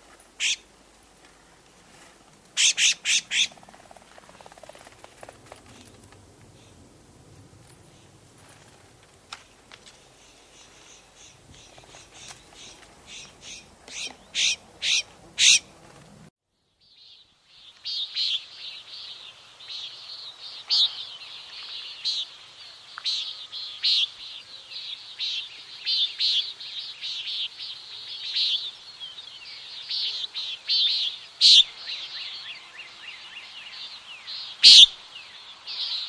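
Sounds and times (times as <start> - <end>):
nighthawk buzzy nasal calls: 0.4 - 0.7, 2.6 - 4.8, 10.2 - 15.9, 30.7 - 31.7, 34.6 - 35.0.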